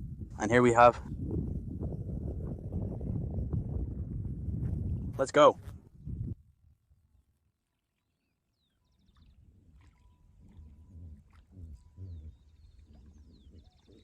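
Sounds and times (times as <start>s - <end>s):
birds chirping: 8.2s - 14.0s.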